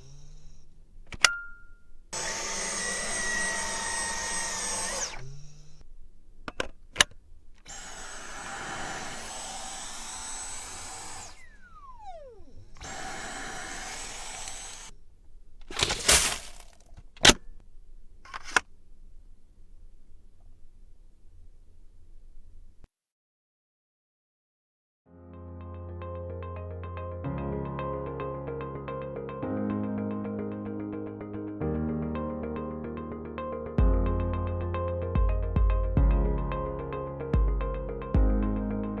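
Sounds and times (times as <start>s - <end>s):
vacuum cleaner motor whining: 2.2s - 5.8s, 7.7s - 14.9s.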